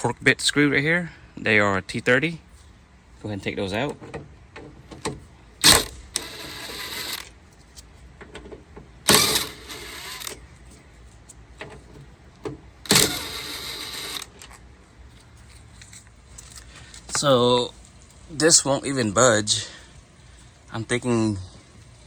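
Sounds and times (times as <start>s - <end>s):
power tool removing screws: 5.6s - 7.3s, 9.1s - 10.4s, 12.9s - 14.4s.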